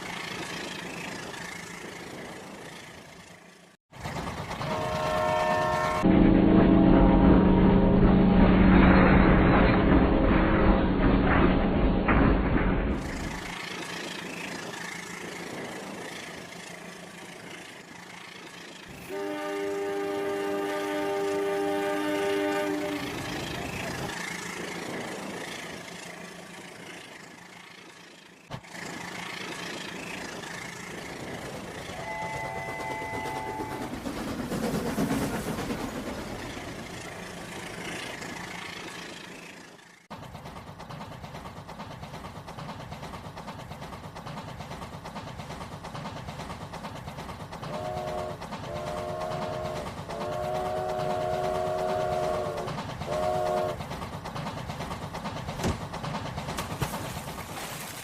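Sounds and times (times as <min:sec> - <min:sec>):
wheels clattering on rail joints: 0:00.0 - 0:06.0, 0:09.5 - 0:19.2, 0:19.8 - 0:58.0
train running: 0:00.0 - 0:58.0
train horn: 0:04.6 - 0:08.8, 0:18.9 - 0:23.4, 0:31.9 - 0:33.9, 0:47.7 - 0:53.8.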